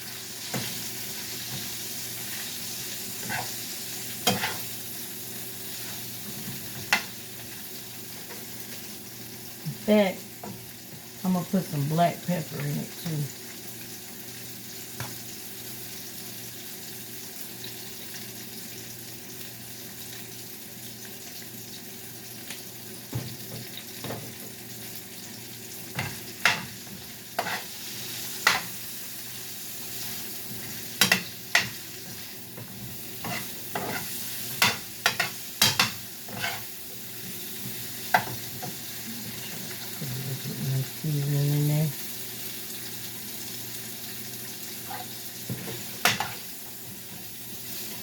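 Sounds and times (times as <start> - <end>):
broccoli sizzling in oil: 0.0 - 48.0
utensil scraping a pan: 33.2 - 36.7.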